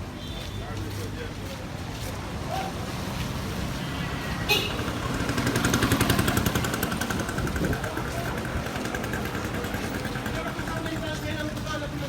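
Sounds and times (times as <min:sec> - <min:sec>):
motorbike engine passing: 0:03.4 - 0:11.5.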